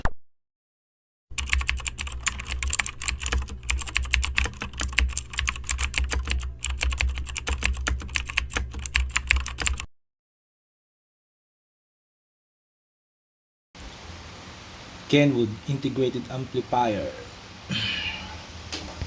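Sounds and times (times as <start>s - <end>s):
steady low hum: 1.3s - 9.6s, 13.8s - 19.0s
fast irregular clicking: 1.3s - 9.9s.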